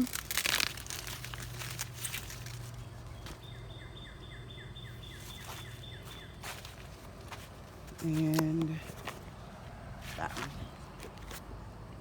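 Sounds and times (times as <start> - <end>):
rustles of corn stalks: 0.0 - 3.4, 5.1 - 9.3
bird singing downslurred notes: 2.8 - 6.6.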